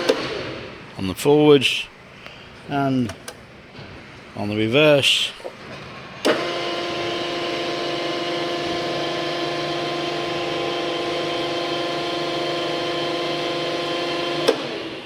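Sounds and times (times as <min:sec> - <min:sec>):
motor and gearbox whine: 0:05.4 - 0:15.0.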